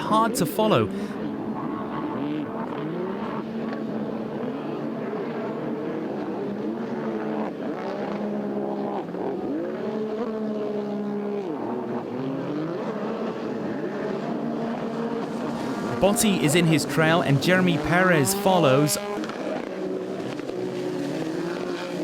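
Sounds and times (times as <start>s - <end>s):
jet ski engines revving: 0.0s - 22.0s.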